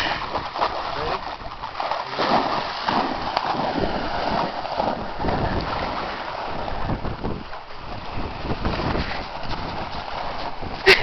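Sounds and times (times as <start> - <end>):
lake waves washing on shore: 0.0 - 11.0
wind gusting across microphone: 0.0 - 11.0.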